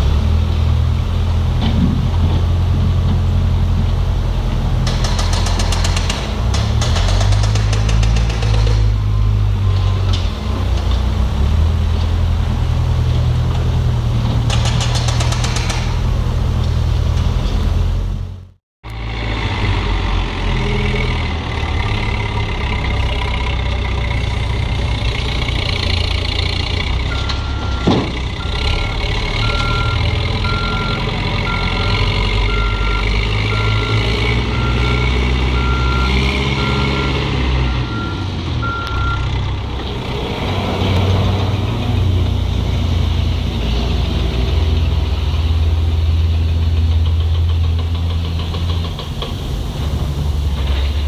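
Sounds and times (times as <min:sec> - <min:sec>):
heavy machine engine running: 0:00.0 - 0:51.0
reversing alarm beeping: 0:04.9 - 0:13.2, 0:27.1 - 0:39.3.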